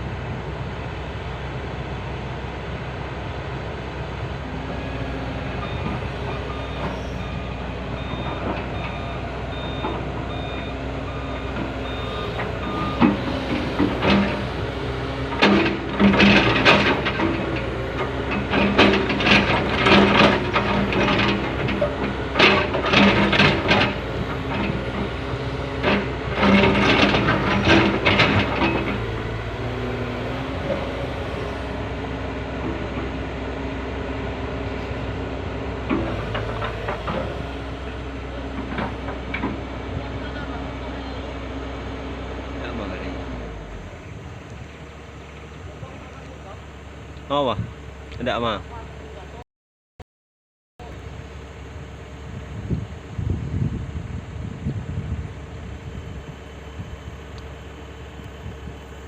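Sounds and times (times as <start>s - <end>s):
excavator engine hum: 0.0s - 49.4s, 50.8s - 59.0s
faint intermittent beep: 5.6s - 13.1s.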